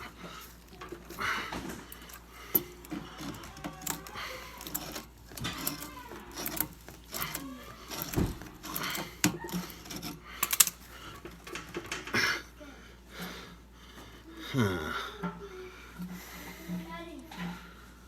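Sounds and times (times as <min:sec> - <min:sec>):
metal clinks and scrapes of wrench: 0:00.7 - 0:10.9.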